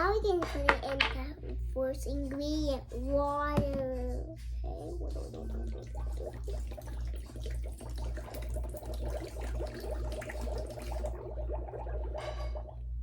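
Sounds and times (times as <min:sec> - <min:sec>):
low pulsing hum: 0:00.0 - 0:13.0
water pouring and splashing: 0:04.7 - 0:12.8.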